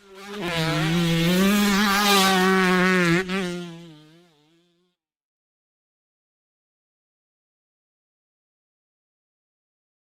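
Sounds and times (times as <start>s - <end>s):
dirt bike engine running: 0.0s - 4.8s.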